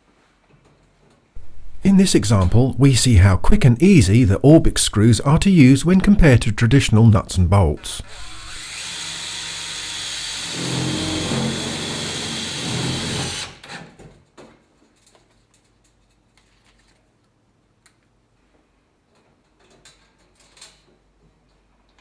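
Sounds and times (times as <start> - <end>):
cordless drill driving a screw: 8.0 - 13.8.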